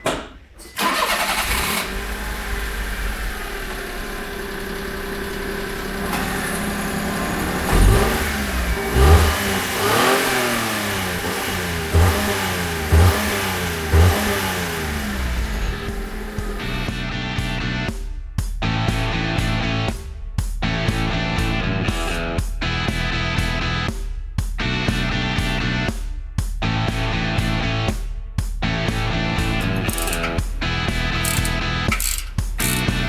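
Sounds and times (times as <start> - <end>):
car engine starting: 0.6 - 17.0, 29.0 - 33.0
car engine idling: 0.8 - 16.9, 29.0 - 33.0
engine revving blips: 0.8 - 16.9, 29.2 - 33.0.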